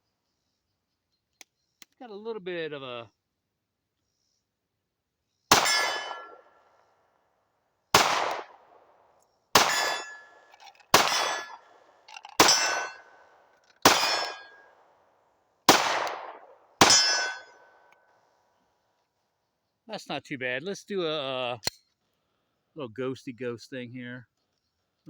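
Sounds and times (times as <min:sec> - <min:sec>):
metallic ring of steel target: 0:05.5 - 0:06.4, 0:09.6 - 0:10.4, 0:11.0 - 0:11.6, 0:12.4 - 0:13.2, 0:13.9 - 0:14.6, 0:16.8 - 0:17.6
pistol shots: 0:05.5 - 0:06.5, 0:07.9 - 0:08.9, 0:09.5 - 0:11.8, 0:12.4 - 0:13.2, 0:13.8 - 0:14.7, 0:15.7 - 0:17.7.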